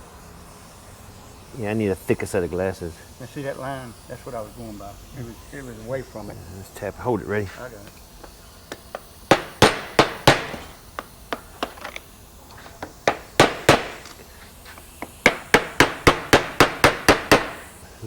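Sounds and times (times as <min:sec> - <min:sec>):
hammer tapping on metal: 0:08.2 - 0:11.8, 0:12.8 - 0:14.1, 0:15.0 - 0:17.7.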